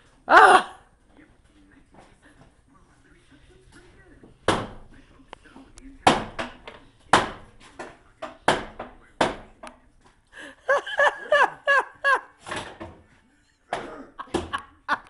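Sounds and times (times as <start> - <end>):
laughter: 10.4 - 12.5, 13.8 - 15.0.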